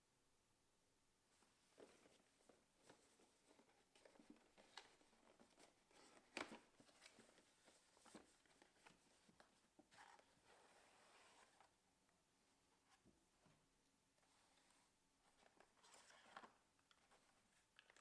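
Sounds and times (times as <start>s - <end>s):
cardboard and plastic rustling: 1.6s - 11.7s.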